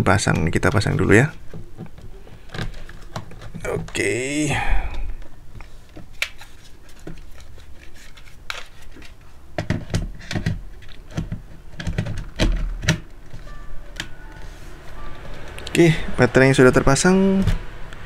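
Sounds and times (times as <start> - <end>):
plastic battery pack clicks and knocks: 8.5 - 13.2.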